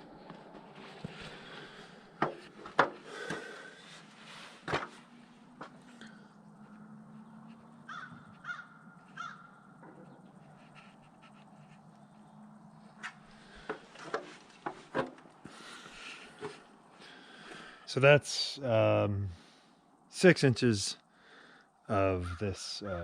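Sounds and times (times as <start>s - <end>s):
crow cawing: 7.8s - 9.8s.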